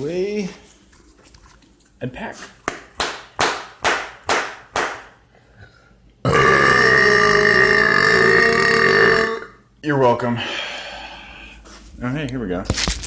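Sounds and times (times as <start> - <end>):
man burping loudly: 6.2 - 9.6.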